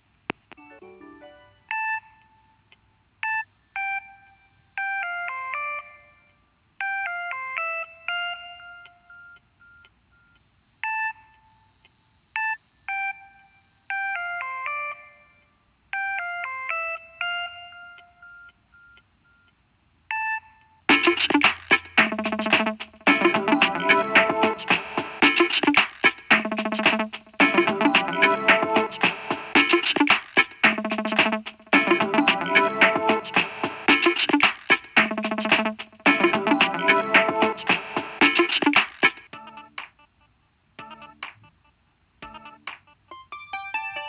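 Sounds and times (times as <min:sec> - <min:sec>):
guitar-like ringtone: 0:00.6 - 0:02.5, 0:03.2 - 0:06.2, 0:06.8 - 0:09.4, 0:16.0 - 0:19.0, 0:20.1 - 0:25.8, 0:26.4 - 0:30.1, 0:30.8 - 0:34.4, 0:35.0 - 0:38.6, 0:39.3 - 0:39.8, 0:40.8 - 0:41.3, 0:42.2 - 0:44.0
electronic ringtone beeping melody: 0:00.6 - 0:02.6, 0:03.2 - 0:11.6, 0:12.4 - 0:19.5, 0:20.1 - 0:25.8, 0:26.4 - 0:30.1, 0:30.8 - 0:34.2, 0:35.1 - 0:38.5, 0:39.3 - 0:39.8, 0:40.8 - 0:41.2, 0:42.2 - 0:44.0.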